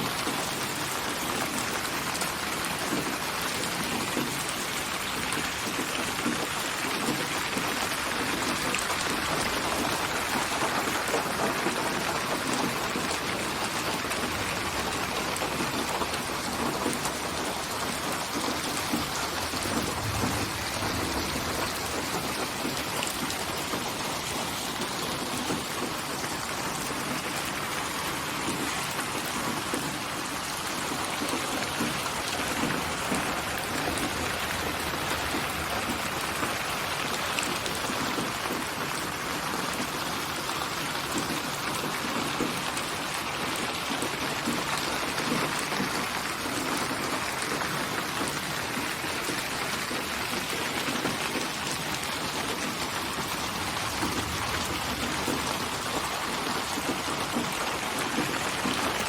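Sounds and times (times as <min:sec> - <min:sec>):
rain falling: 0:00.0 - 0:59.0
low rumble: 0:19.2 - 0:22.9.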